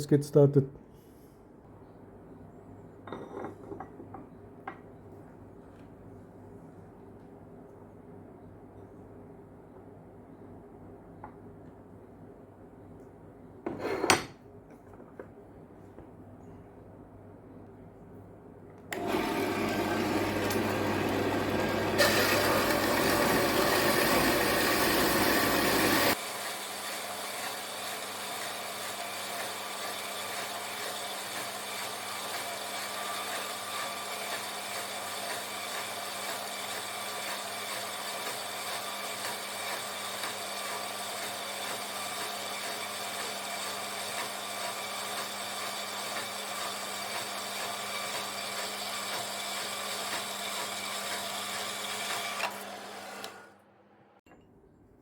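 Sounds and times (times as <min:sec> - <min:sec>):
machine tool working steel: 0:19.0 - 0:53.7.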